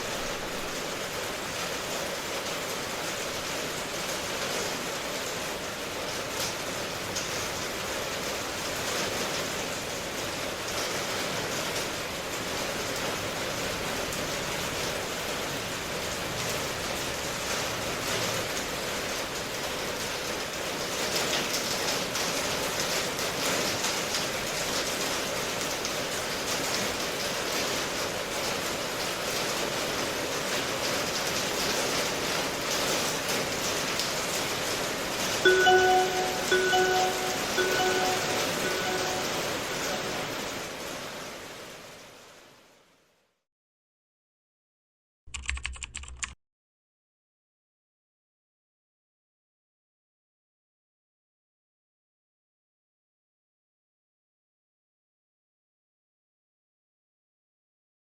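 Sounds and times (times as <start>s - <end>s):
steady rain: 0.0s - 43.4s.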